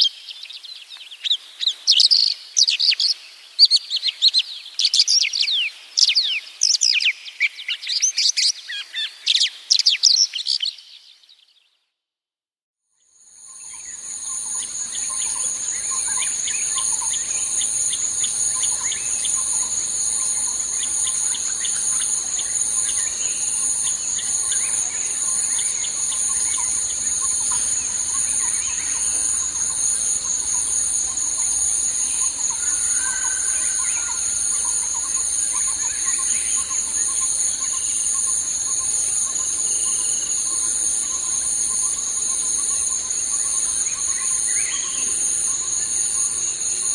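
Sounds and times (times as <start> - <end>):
insects trilling: 13.4 - 46.9
bird chirps: 13.6 - 46.9.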